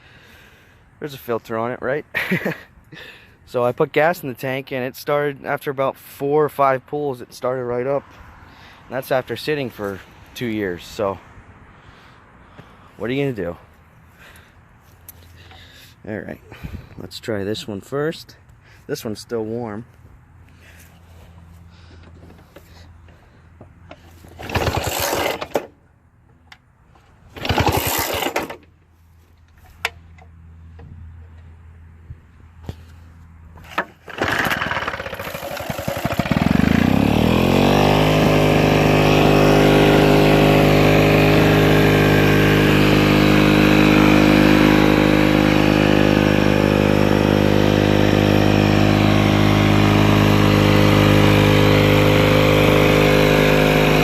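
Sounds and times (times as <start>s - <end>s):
lawn mower engine running: 8.0s - 11.2s, 11.8s - 19.0s, 19.8s - 54.0s
lawn mower recoil starter pulls: 21.7s - 25.8s, 27.0s - 28.8s, 33.6s - 54.0s.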